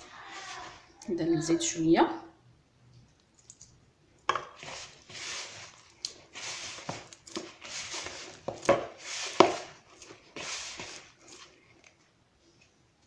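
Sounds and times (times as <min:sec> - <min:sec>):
hands squishing bread dough: 0:04.4 - 0:12.1.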